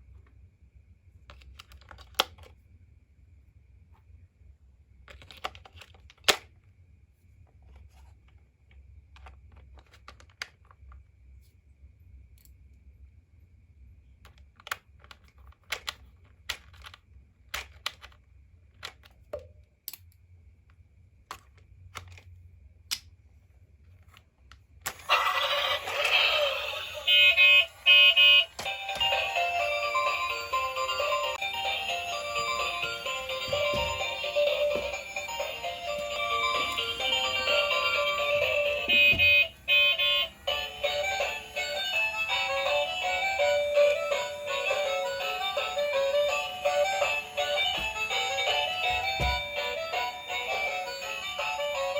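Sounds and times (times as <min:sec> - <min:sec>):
plastic parts clicking: 0:01.3 - 0:02.6, 0:05.1 - 0:06.5, 0:08.7 - 0:11.0, 0:14.2 - 0:20.2, 0:21.3 - 0:22.3.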